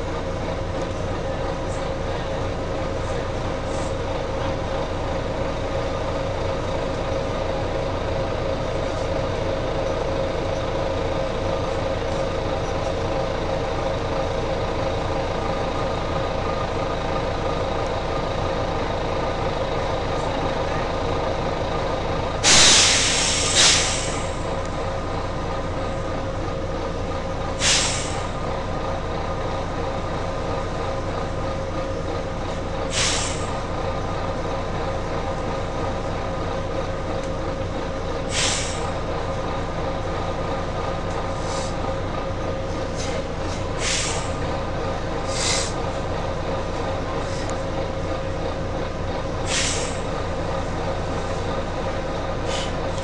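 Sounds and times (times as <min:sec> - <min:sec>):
diesel engine idling hum: 0:00.0 - 0:53.0
compressed air hisses: 0:22.4 - 0:24.3, 0:27.6 - 0:28.2, 0:32.9 - 0:33.5, 0:38.3 - 0:38.8, 0:43.8 - 0:44.4, 0:45.3 - 0:45.8, 0:49.5 - 0:50.0.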